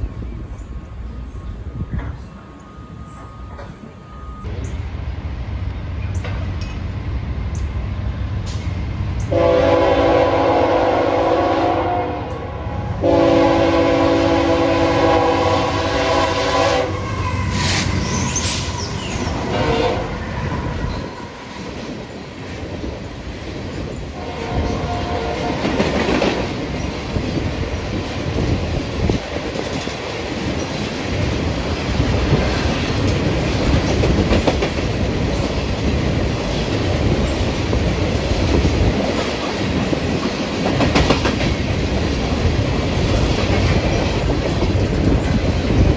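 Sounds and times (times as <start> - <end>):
locomotive horn blowing: 9.3 - 18.6, 19.2 - 21.5, 24.2 - 25.9
wheel squeal: 17.0 - 19.4
wheels clacking over rail joints: 20.8 - 45.9.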